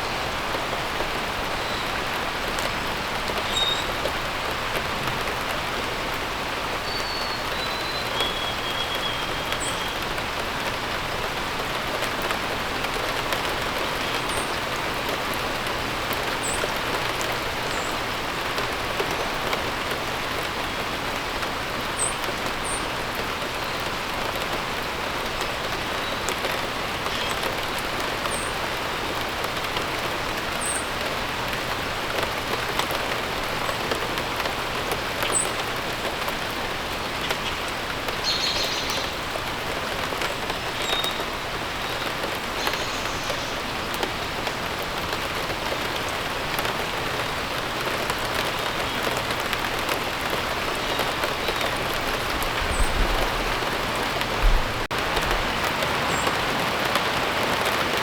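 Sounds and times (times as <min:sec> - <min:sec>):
rain pattering on surfaces: 0:00.0 - 0:58.0.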